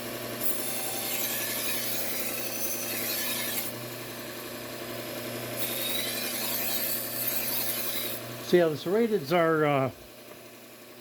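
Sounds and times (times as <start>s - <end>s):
knife blade grinding on belt: 0.6s - 3.7s.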